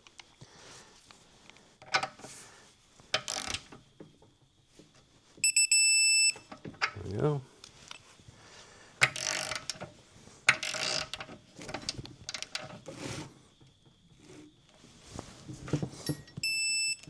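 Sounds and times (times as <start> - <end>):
faint steady tone: 3.7 - 9.0, 15.7 - 17.0
torque wrench ratcheting: 9.0 - 9.8, 10.5 - 11.2.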